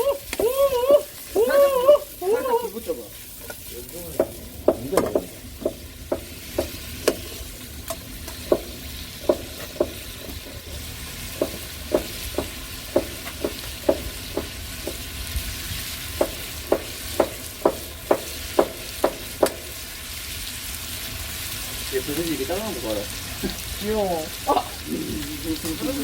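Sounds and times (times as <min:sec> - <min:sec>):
food sizzling in a pan: 0:00.0 - 0:26.0
utensil knocking against pan: 0:04.1 - 0:10.6, 0:11.4 - 0:15.1, 0:16.2 - 0:19.8.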